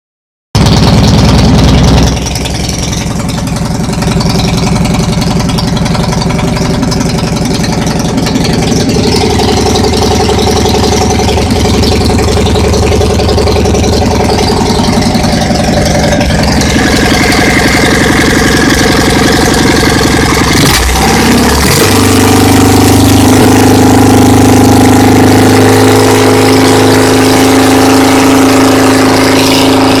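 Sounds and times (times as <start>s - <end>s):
motorcycle engine idling: 0.6s - 23.9s.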